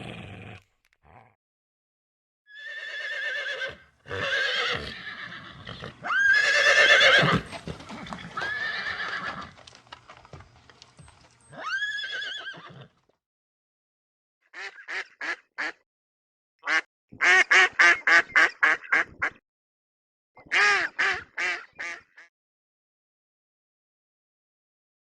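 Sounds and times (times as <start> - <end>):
horse whinnying: 2.5 - 9.6, 11.4 - 13.0.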